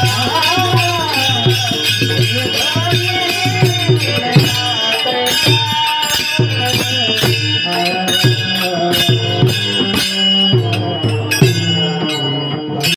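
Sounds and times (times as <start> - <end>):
drum strokes: 0.0 - 12.9
ringing hand cymbals: 0.0 - 12.9
sustained held notes: 0.0 - 12.9.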